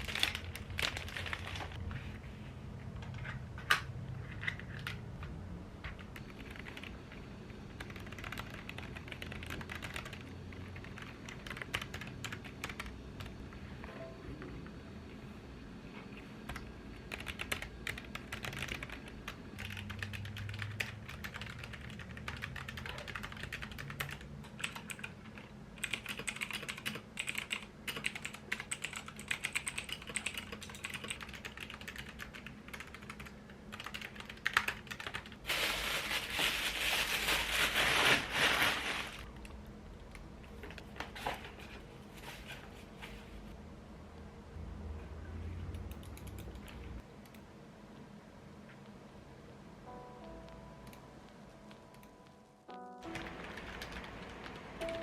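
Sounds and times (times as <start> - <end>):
mechanical keyboard typing: 5.9 - 7.2, 7.8 - 13.4, 16.5 - 35.4, 45.8 - 46.8, 53.1 - 55.0.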